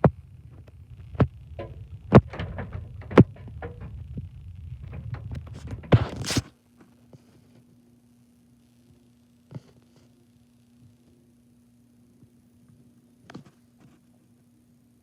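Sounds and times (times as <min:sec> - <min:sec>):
low rumble: 0:00.0 - 0:06.4
sharp irregular knocks: 0:00.0 - 0:06.4
scraping burst: 0:00.0 - 0:06.5.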